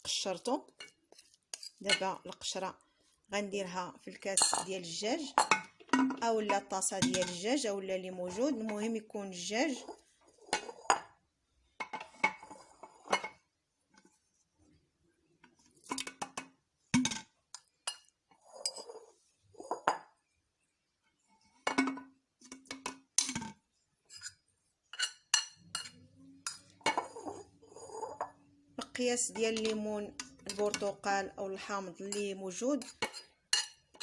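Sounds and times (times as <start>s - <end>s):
glassware clinking: 4.4s - 4.7s, 25.0s - 28.3s.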